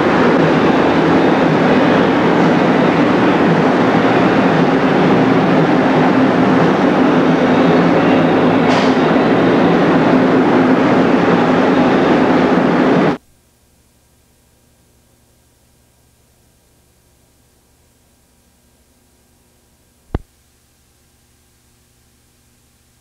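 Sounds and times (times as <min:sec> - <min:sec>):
loud machine hum: 0:00.0 - 0:13.2.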